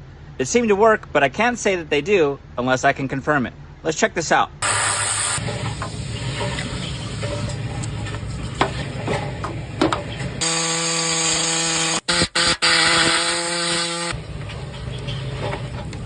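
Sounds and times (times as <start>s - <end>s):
power tool whining: 10.4s - 14.2s.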